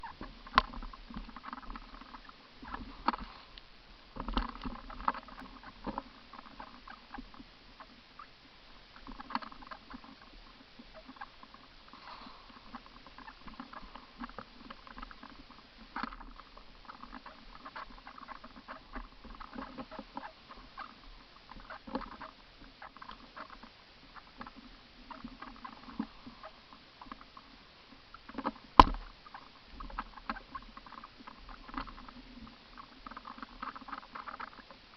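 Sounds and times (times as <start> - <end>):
light rustling and clicking: 0.1 - 7.9
loud sharp knock: 28.8 - 29.0.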